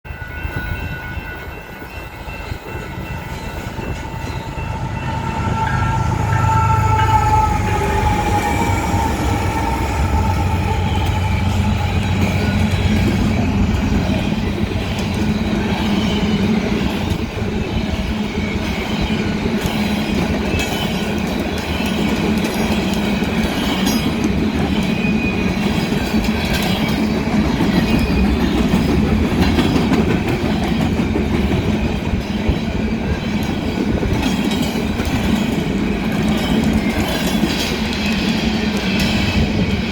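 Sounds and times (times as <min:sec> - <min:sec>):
locomotive engine rumble: 0:02.2 - 0:17.4
train wheels clicking over rails: 0:02.4 - 0:39.9
locomotive horn chord: 0:03.6 - 0:13.2.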